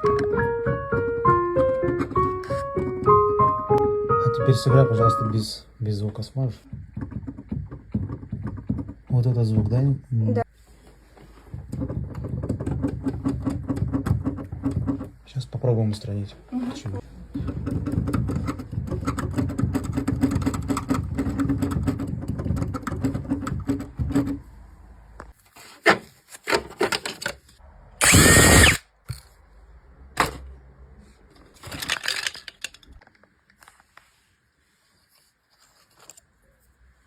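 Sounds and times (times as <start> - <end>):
clicks and handling noises: 26.3 - 27.6, 31.2 - 34.1, 35.1 - 36.4
electric drill-driver running: 28.0 - 28.8.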